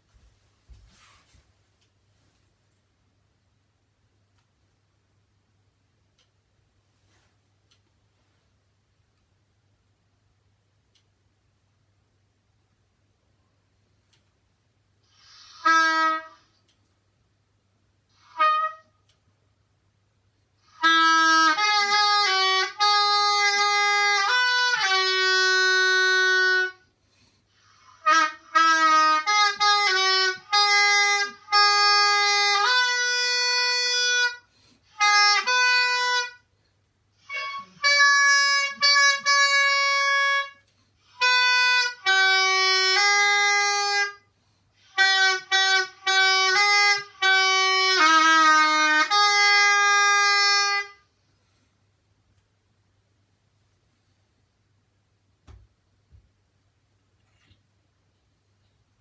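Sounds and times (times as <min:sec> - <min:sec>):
solo oboe playing slow melody: 0:15.2 - 0:16.5, 0:18.2 - 0:18.9, 0:20.7 - 0:26.9, 0:27.6 - 0:36.5, 0:37.2 - 0:51.1.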